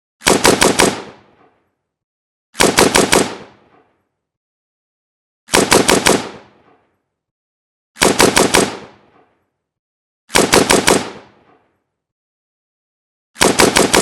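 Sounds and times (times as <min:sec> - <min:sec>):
rifle firing automatic bursts: 0:00.2 - 0:01.4, 0:02.6 - 0:03.7, 0:05.5 - 0:06.6, 0:08.0 - 0:09.1, 0:10.3 - 0:11.4, 0:13.4 - 0:14.0
gunfire echo: 0:00.2 - 0:01.8, 0:02.6 - 0:04.1, 0:05.5 - 0:07.0, 0:08.0 - 0:09.5, 0:10.3 - 0:11.8, 0:13.4 - 0:14.0.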